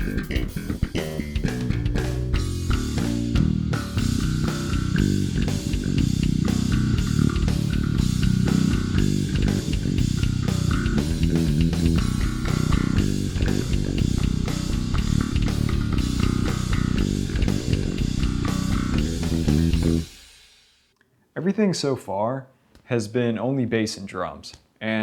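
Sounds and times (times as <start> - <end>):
bass guitar riff: 0.0 - 20.2
drum backing track: 0.0 - 20.8.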